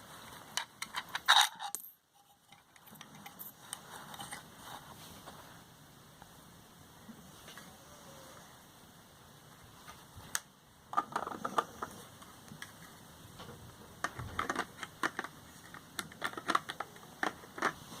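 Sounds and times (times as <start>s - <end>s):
small hard plastic clicks and rattles: 10.4s - 12.8s, 13.4s - 17.8s.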